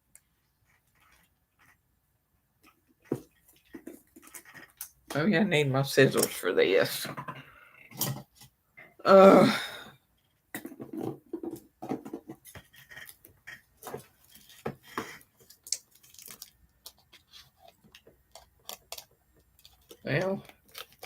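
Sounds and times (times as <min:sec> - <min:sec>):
packaging rustling: 0:12.4 - 0:21.0
package being opened by hand: 0:15.4 - 0:21.0.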